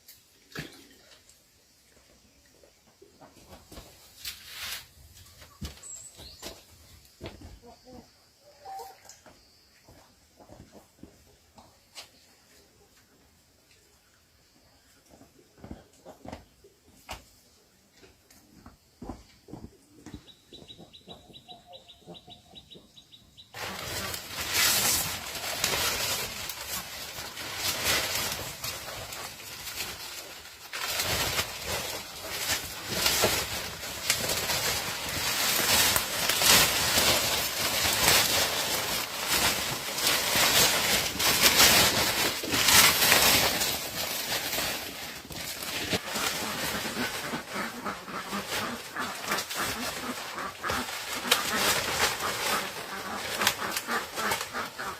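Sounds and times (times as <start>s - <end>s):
poultry wings flapping: 23.6s - 54.9s.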